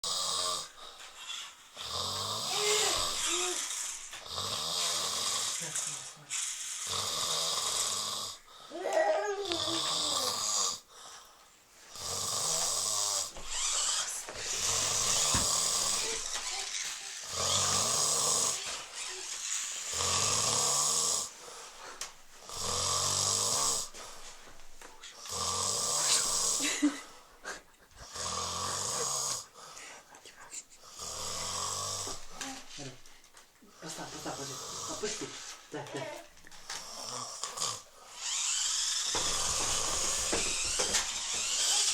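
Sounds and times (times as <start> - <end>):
man snoring loudly: 0.0 - 0.8, 1.8 - 5.7, 6.8 - 10.9, 11.9 - 19.2, 19.8 - 21.4, 22.4 - 23.9, 25.3 - 26.8, 28.0 - 29.6, 30.9 - 32.3, 34.1 - 35.4, 36.8 - 41.9.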